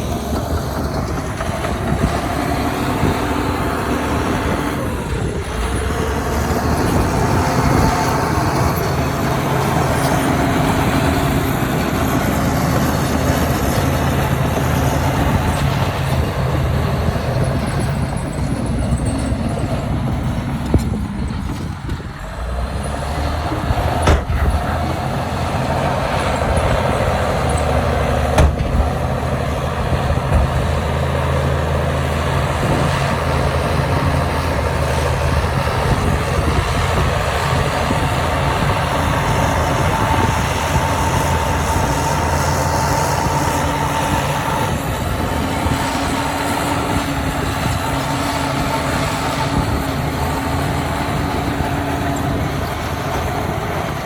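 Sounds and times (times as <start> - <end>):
diesel machinery running: 0.0 - 54.0
sharp knocks: 24.0 - 25.1, 28.4 - 29.1.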